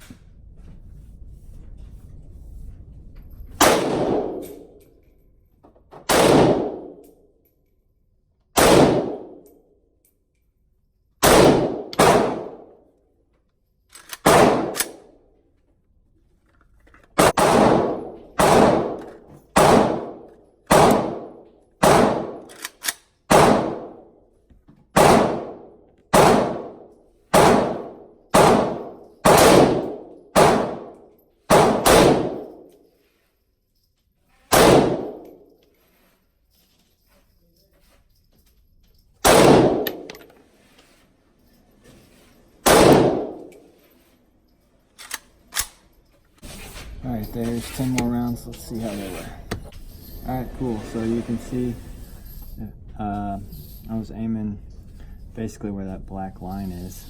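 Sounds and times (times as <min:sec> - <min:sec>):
rifle shots with echo: 0:03.6 - 0:04.8, 0:06.1 - 0:07.0, 0:08.6 - 0:09.4, 0:11.2 - 0:12.8, 0:14.2 - 0:15.1, 0:17.2 - 0:22.5, 0:23.3 - 0:24.1, 0:25.0 - 0:32.6, 0:34.5 - 0:35.3, 0:39.2 - 0:40.2, 0:42.6 - 0:43.5.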